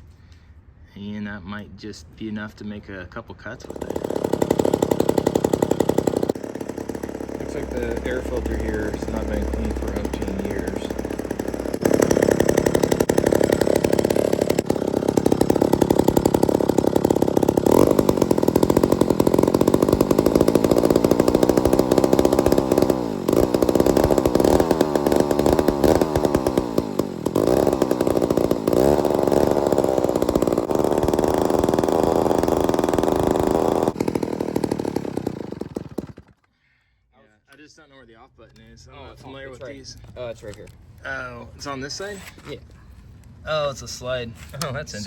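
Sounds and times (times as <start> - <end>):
chainsaw engine revving: 3.6 - 36.5.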